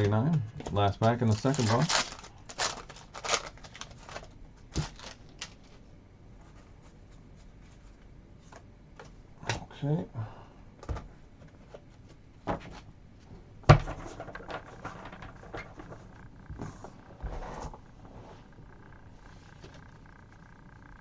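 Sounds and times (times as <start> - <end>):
cards rustling: 0.0 - 5.8.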